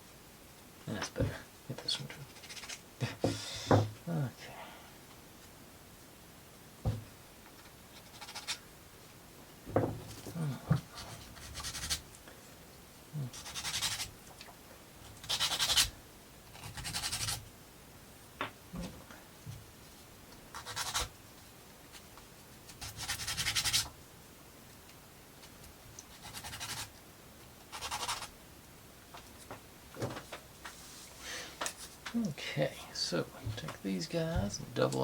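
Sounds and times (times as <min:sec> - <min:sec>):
scratchy rubbing on thin wood: 0:02.0 - 0:02.8, 0:07.6 - 0:08.6, 0:11.0 - 0:12.0, 0:13.3 - 0:14.1, 0:15.2 - 0:15.9, 0:16.5 - 0:17.4, 0:20.5 - 0:21.1, 0:22.7 - 0:23.9, 0:26.1 - 0:26.9, 0:27.7 - 0:28.3.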